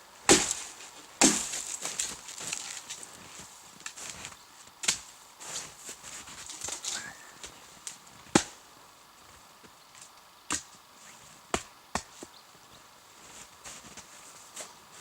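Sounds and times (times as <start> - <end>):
dry wood being chopped: 0.3 - 2.7, 4.8 - 5.1, 8.3 - 8.6, 10.5 - 10.7, 11.5 - 12.2.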